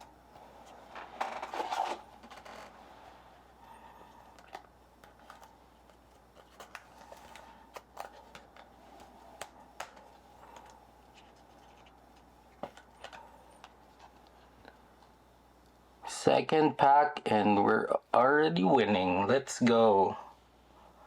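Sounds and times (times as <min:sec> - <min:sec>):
trading cards clicking and scraping: 0:04.2 - 0:14.5.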